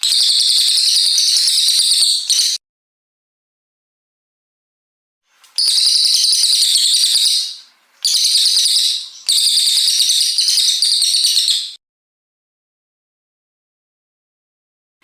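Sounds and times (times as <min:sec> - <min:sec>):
songbird twittering: 0:00.0 - 0:02.6, 0:05.5 - 0:11.8.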